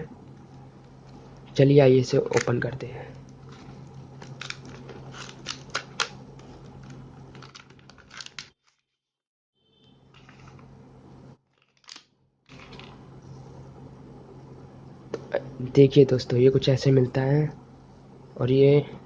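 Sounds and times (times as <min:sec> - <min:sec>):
packaging crinkling and tearing: 0:03.5 - 0:08.7.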